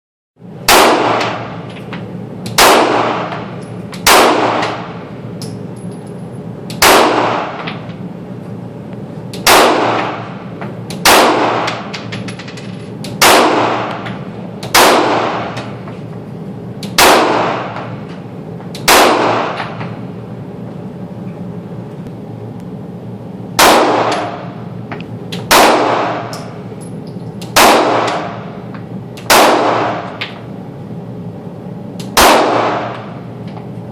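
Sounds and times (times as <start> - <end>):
steady low hum: 0.4 - 33.9
pistol shots with echoing ring: 0.6 - 1.6, 2.5 - 5.0, 6.7 - 7.7, 9.4 - 12.0, 13.1 - 15.7, 16.8 - 18.0, 18.8 - 19.9, 23.6 - 24.5, 25.3 - 26.4, 27.4 - 28.4, 29.2 - 30.2, 32.1 - 33.2.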